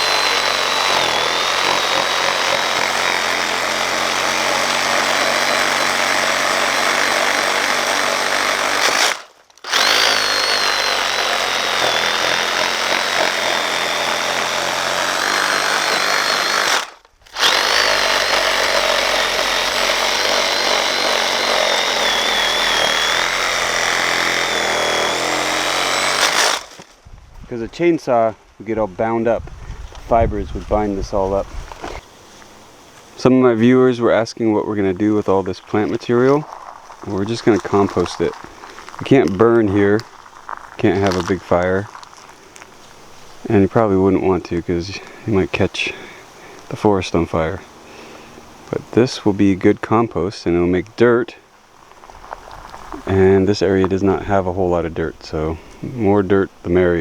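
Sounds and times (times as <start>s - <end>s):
reciprocating saw cutting wood: 0.0s - 26.9s, 31.2s - 49.8s.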